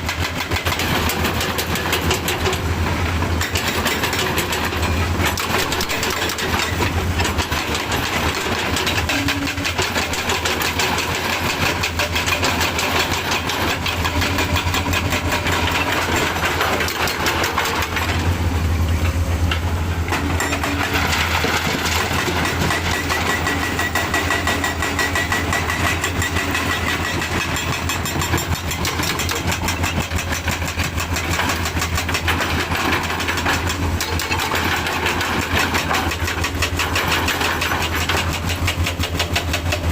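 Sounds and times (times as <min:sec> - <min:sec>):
diesel engine clattering: 0:00.0 - 0:39.9.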